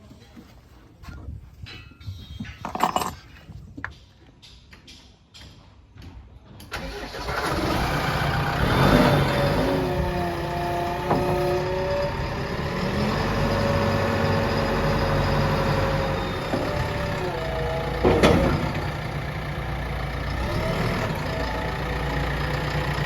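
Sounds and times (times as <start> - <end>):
heavy diesel engine with whine: 6.9 - 23.0.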